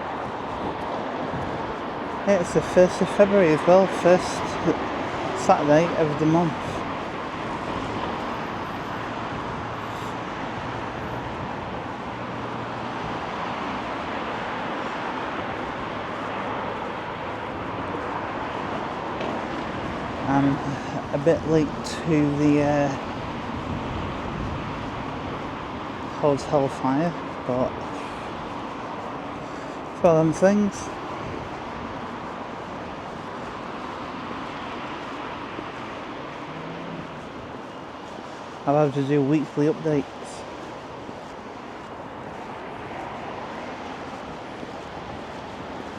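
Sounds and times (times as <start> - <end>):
outdoor ambient noise: 0.0 - 45.9
road traffic noise: 0.0 - 45.9
faint engine hum: 16.9 - 45.9.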